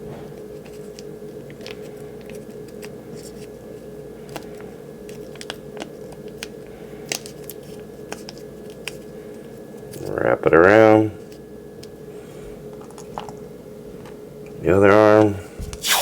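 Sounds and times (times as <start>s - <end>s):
steady background hum: 0.0s - 16.0s
tape clicks and crinkles: 4.3s - 9.1s.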